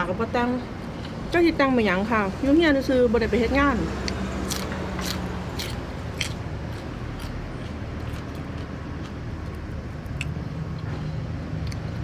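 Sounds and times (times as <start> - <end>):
person chewing: 4.1 - 10.9, 11.6 - 12.0.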